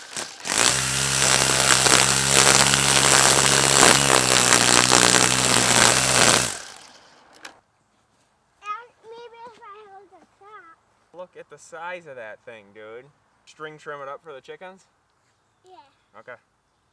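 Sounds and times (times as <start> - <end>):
string trimmer whirring: 0.0 - 7.6.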